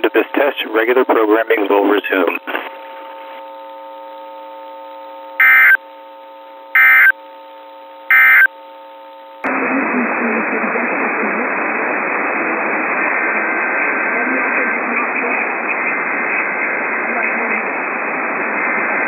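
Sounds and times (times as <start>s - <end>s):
radio static hiss: 0.0s - 5.8s, 9.3s - 19.0s
faint steady hum: 0.0s - 19.0s
screechy digital data bursts: 8.1s - 8.5s.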